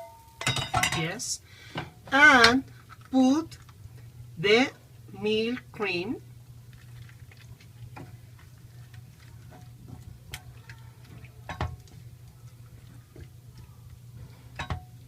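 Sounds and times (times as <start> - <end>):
utensils knocking against pan: 0.0 - 1.1, 11.5 - 11.8, 14.6 - 14.9
steady low hum: 0.0 - 15.0.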